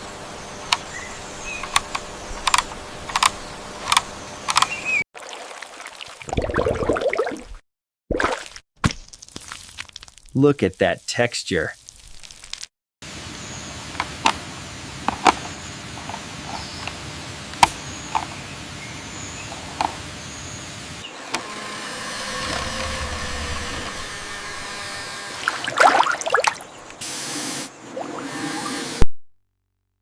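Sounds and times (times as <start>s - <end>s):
steady whirring with hum: 0.0s - 4.9s, 21.1s - 25.6s.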